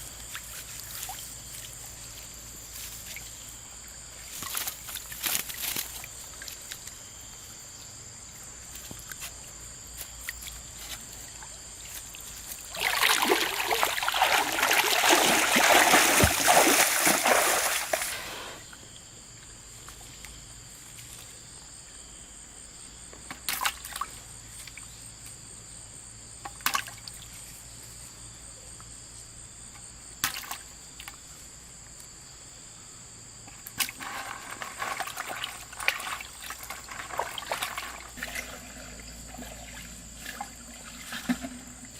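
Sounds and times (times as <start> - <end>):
river water splashing: 10.2 - 18.5, 33.8 - 41.9.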